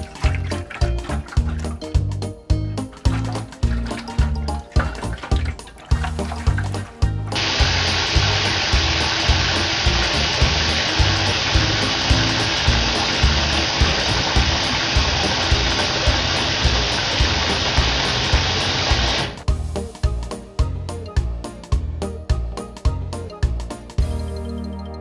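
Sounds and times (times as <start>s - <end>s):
running water gushing: 0.0s - 19.5s
background music with beat: 0.0s - 25.0s.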